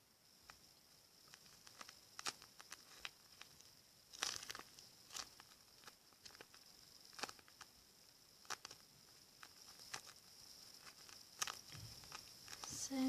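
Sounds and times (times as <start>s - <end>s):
paper squishy crinkling: 1.3s - 7.7s, 8.4s - 8.8s, 9.4s - 13.0s.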